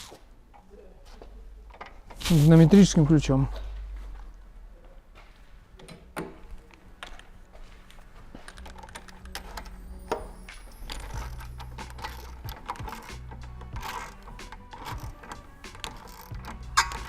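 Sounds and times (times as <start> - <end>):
metallic clicks of hand tools: 8.5 - 17.0.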